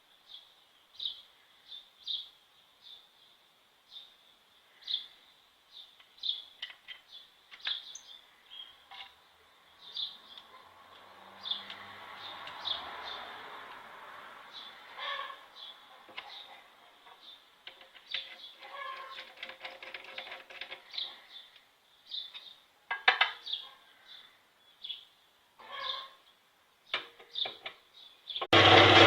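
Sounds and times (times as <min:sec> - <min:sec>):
electric motor humming: 0:28.6 - 0:29.0.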